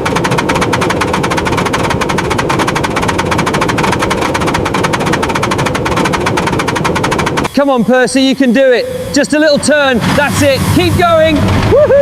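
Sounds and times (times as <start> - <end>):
toy train motor rattling: 0.0 - 7.5.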